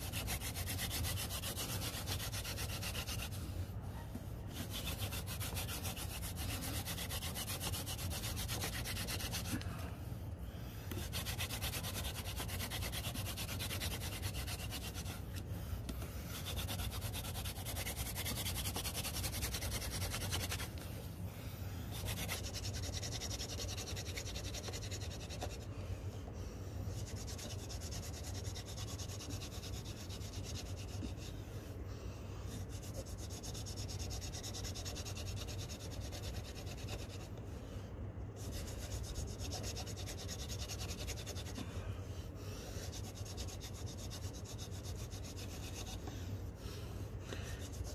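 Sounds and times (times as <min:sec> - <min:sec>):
wooden spindle rasping on wood: 0:00.0 - 0:03.5, 0:04.5 - 0:09.7, 0:10.9 - 0:20.9, 0:21.9 - 0:25.7, 0:38.4 - 0:41.6.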